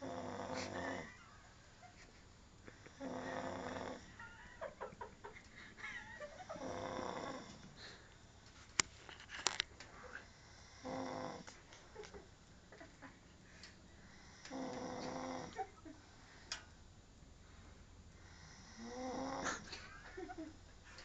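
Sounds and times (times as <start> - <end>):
snoring: 0.0 - 1.2, 2.8 - 4.2, 6.5 - 7.9, 10.1 - 11.5, 14.1 - 15.6, 18.2 - 19.7.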